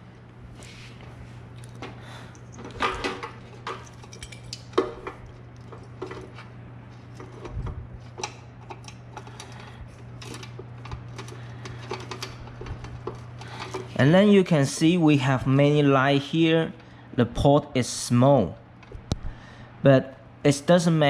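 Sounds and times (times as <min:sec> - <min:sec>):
low hum: 0:00.0 - 0:20.4
plastic connectors clicking and rattling: 0:08.1 - 0:14.0.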